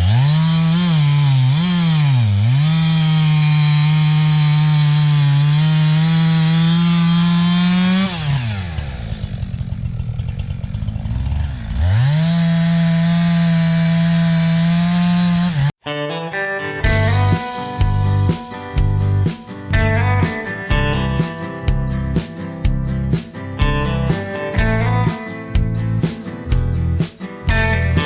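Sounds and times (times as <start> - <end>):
chainsaw revving while cutting wood: 0.0 - 15.8, 16.8 - 18.5.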